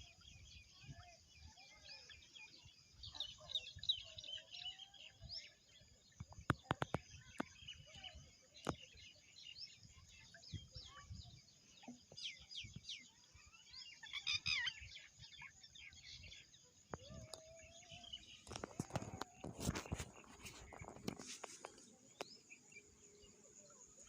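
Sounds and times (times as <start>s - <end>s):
small birds chirping: 0.0s - 24.0s.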